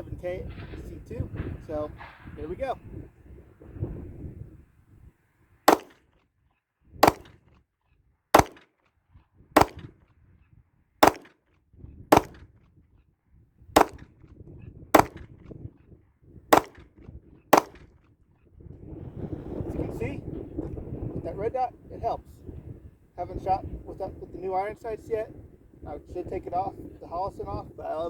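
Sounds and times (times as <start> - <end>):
pistol shots: 5.7 - 6.0, 7.0 - 7.4, 8.4 - 8.7, 9.6 - 9.9, 11.0 - 11.4, 12.1 - 12.4, 13.8 - 14.0, 15.0 - 15.2, 16.5 - 16.8, 17.6 - 17.8.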